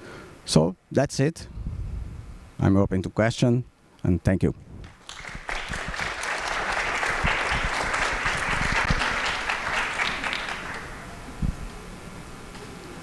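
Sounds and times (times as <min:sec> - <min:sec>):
audience applauding: 0:04.9 - 0:11.2.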